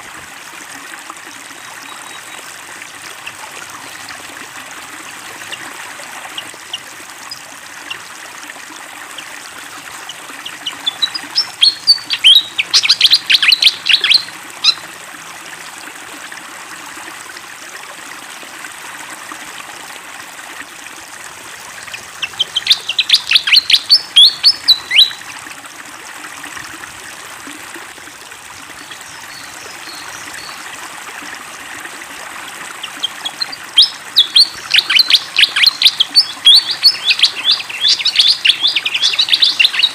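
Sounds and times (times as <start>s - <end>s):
flowing water: 0.0s - 39.9s
bird singing sharp high notes: 33.0s - 39.9s.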